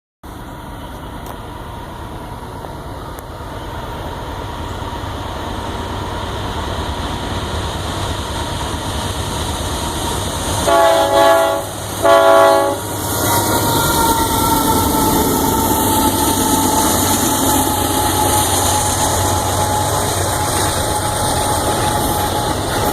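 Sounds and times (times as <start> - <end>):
locomotive rumble: 0.2 - 22.9
locomotive air horn blasts: 10.6 - 22.6.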